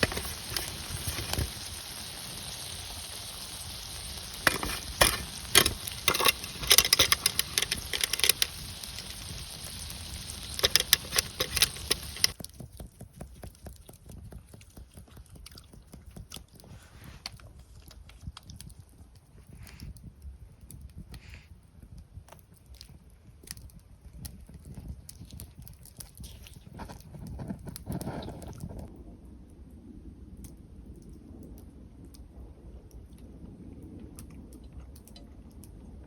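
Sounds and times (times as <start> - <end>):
utensil scraping a pan: 0.0 - 2.6, 3.5 - 12.4
food sizzling in a frying pan: 0.0 - 12.4.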